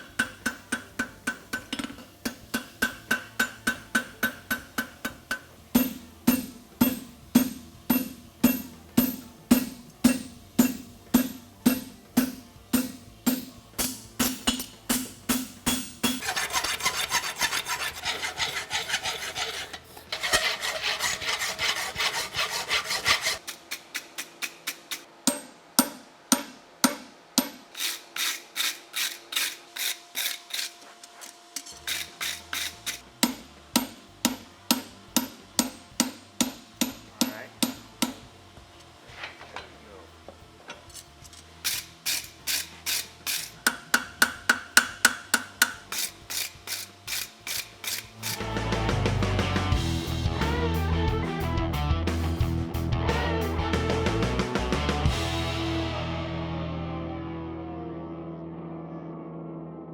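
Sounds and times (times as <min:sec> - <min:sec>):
rasp scraping steel horseshoe: 0:00.0 - 0:25.4, 0:27.4 - 0:34.9, 0:41.6 - 0:48.6.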